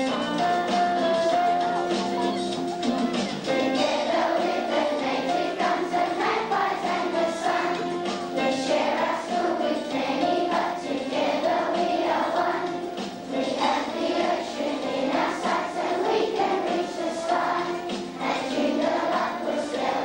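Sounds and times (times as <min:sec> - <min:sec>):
children singing together: 0:00.0 - 0:20.0.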